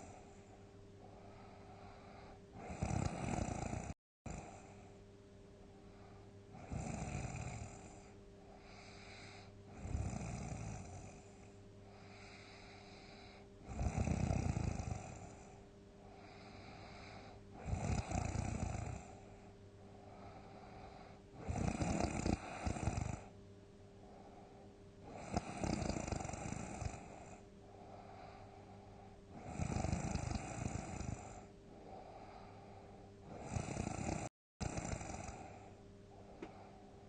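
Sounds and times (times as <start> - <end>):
quiet breaths: 0.0 - 37.0
person snoring loudly: 1.8 - 4.8, 6.6 - 11.4, 12.1 - 15.6, 16.2 - 19.2, 20.1 - 23.3, 25.1 - 27.4, 29.3 - 32.4, 33.2 - 35.7.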